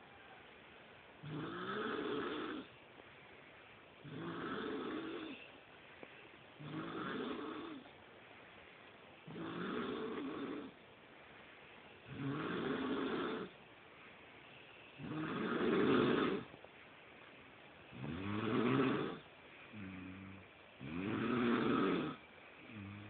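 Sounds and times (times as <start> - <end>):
person snoring: 1.2 - 2.7, 4.0 - 5.4, 6.6 - 7.8, 9.3 - 10.7, 18.0 - 23.0.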